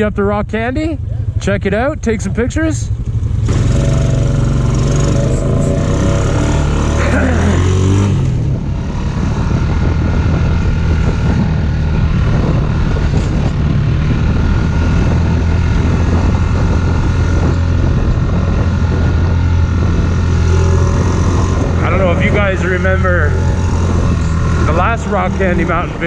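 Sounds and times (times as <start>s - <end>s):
vehicle engine running: 0.0s - 26.0s
wind noise on microphone: 7.7s - 26.0s.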